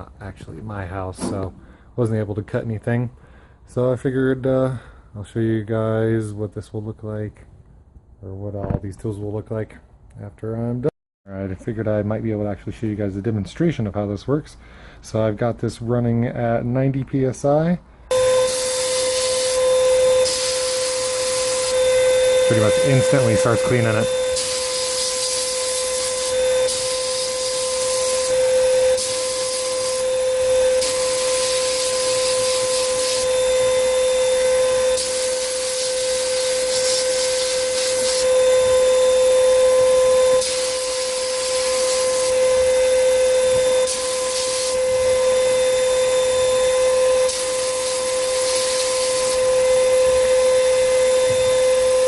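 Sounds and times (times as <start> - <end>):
sandblasting gun hissing: 18.1 - 52.0
steady hum: 18.1 - 52.0.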